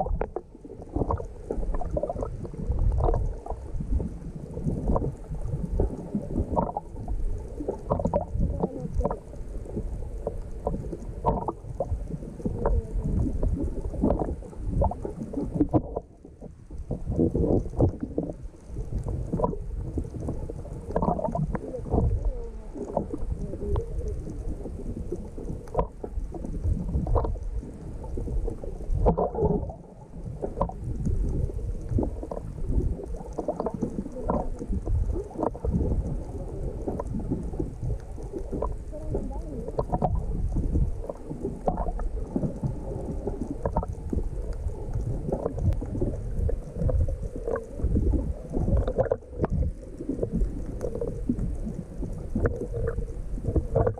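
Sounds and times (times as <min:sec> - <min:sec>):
muffled underwater sloshing: 0:00.0 - 0:53.9
underwater knocks and thumps: 0:00.0 - 0:53.9.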